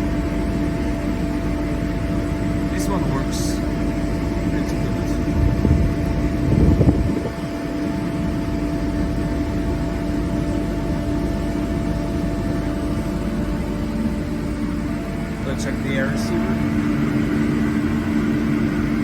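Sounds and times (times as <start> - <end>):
air compressor running: 0.0 - 19.0
low rumble: 5.2 - 7.6.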